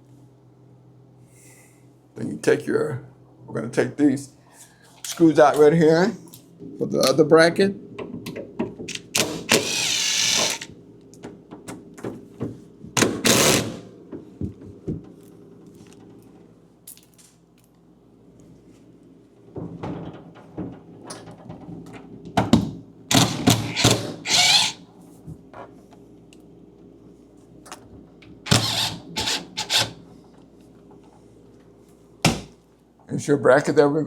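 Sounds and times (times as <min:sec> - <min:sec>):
parts clicking and knocking: 0:08.9 - 0:10.7, 0:28.5 - 0:30.0
power drill running: 0:08.9 - 0:10.7, 0:13.2 - 0:13.8, 0:23.1 - 0:24.8, 0:28.5 - 0:30.0.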